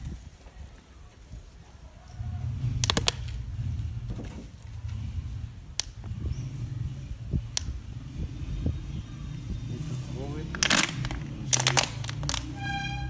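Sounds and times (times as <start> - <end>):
sharp ticks: 5.7 - 6.1.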